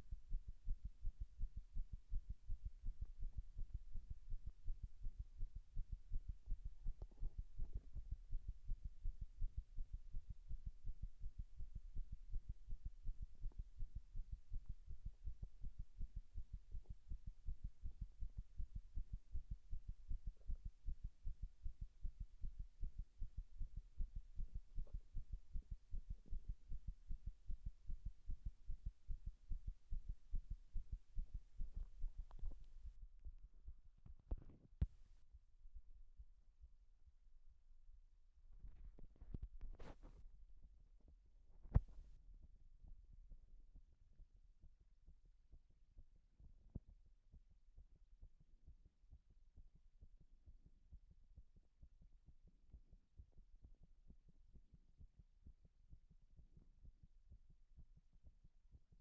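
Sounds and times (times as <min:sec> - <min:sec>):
heartbeat thumps: 0:00.0 - 0:32.9, 0:41.8 - 0:42.1.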